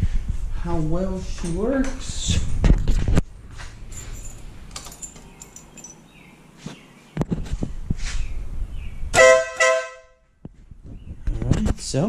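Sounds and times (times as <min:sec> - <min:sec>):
motorcycle air horn blast: 0:09.2 - 0:10.2.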